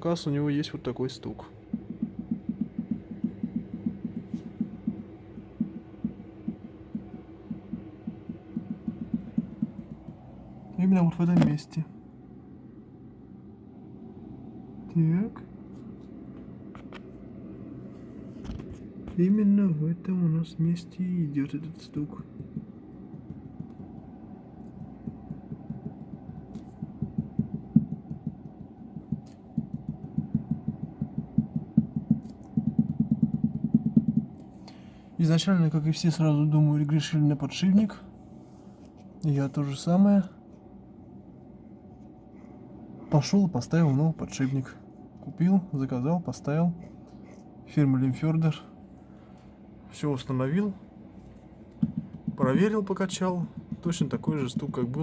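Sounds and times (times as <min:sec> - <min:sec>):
shock absorber knocking: 0:01.6 - 0:10.2, 0:22.2 - 0:34.4, 0:51.8 - 0:52.6, 0:53.5 - 0:55.0.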